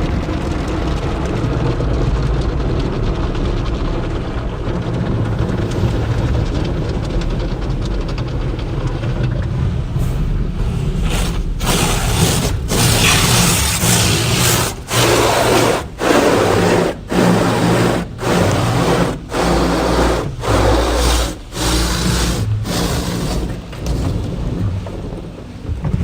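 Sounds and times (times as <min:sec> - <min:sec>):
car wash machinery hum: 0:00.0 - 0:26.0
loud water spray: 0:10.0 - 0:24.2.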